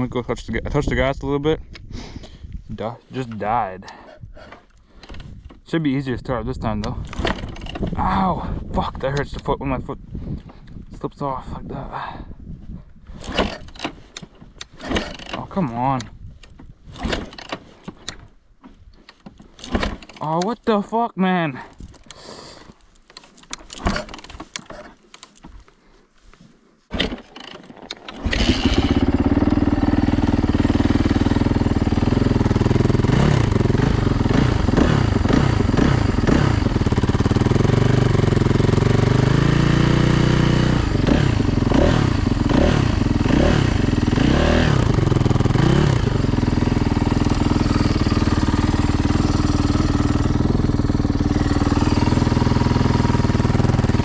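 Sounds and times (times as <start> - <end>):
dirt bike engine revving and idling: 28.0 - 54.0.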